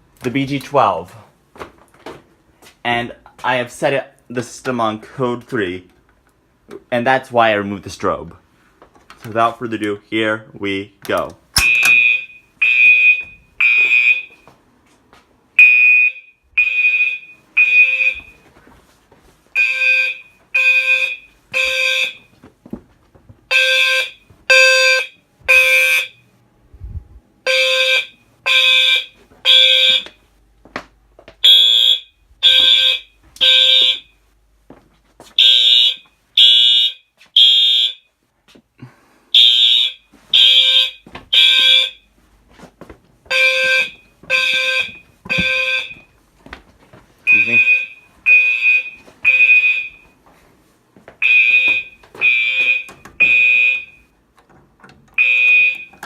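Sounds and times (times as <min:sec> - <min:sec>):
fire alarm horn blasts: 0:11.6 - 0:14.5, 0:15.6 - 0:18.5, 0:19.6 - 0:22.3, 0:23.5 - 0:26.3, 0:27.4 - 0:30.2, 0:31.4 - 0:34.2, 0:35.4 - 0:38.1, 0:39.3 - 0:42.1, 0:43.3 - 0:46.2, 0:47.3 - 0:50.2, 0:51.2 - 0:54.1, 0:55.2 - 0:56.0.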